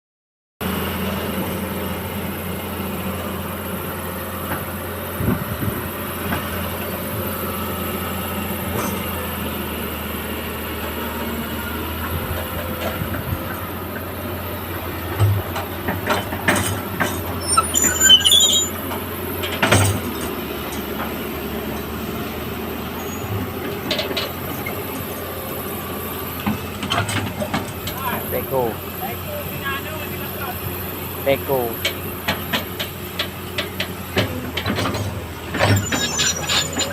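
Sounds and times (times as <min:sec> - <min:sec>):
excavator engine running: 0:00.6 - 0:36.9
high machine squeals: 0:17.4 - 0:18.8, 0:23.0 - 0:23.4, 0:35.6 - 0:36.9.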